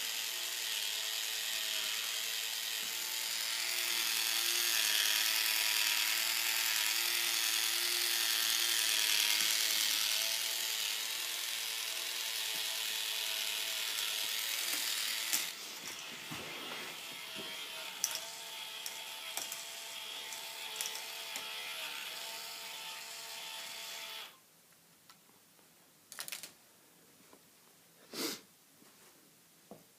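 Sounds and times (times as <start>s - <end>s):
small motors whirring: 0.0s - 24.4s
plastic parts ratcheting clatter: 26.1s - 26.6s.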